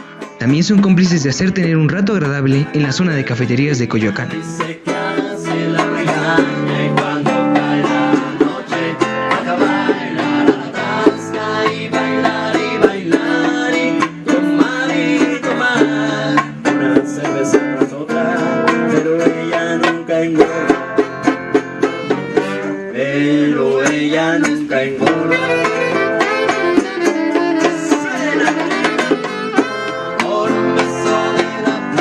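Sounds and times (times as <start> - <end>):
acoustic band playing: 0.0 - 32.0
acoustic guitars strummed: 0.0 - 32.0.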